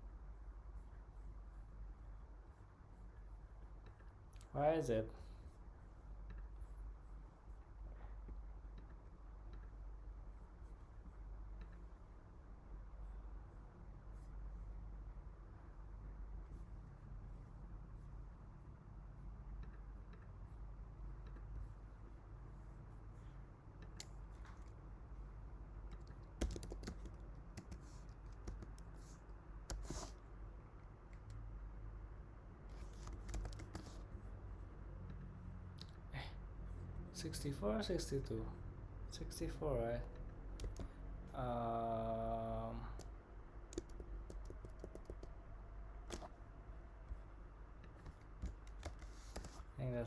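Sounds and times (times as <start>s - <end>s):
computer keyboard typing: 25.9s - 30.1s, 32.8s - 34.0s, 40.5s - 41.0s, 42.9s - 45.4s, 46.0s - 46.3s, 47.8s - 49.6s.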